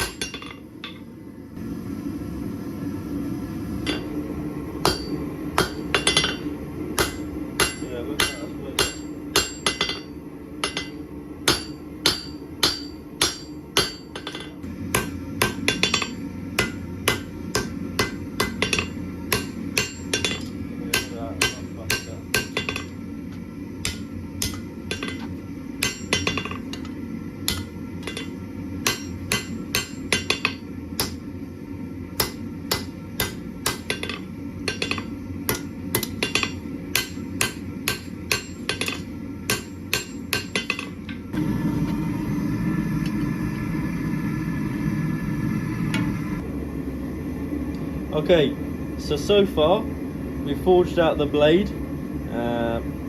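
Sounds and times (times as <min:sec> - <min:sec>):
hammer striking anvil: 0:00.0 - 0:01.0, 0:03.9 - 0:04.1, 0:04.8 - 0:23.0, 0:23.8 - 0:31.2, 0:32.2 - 0:41.2.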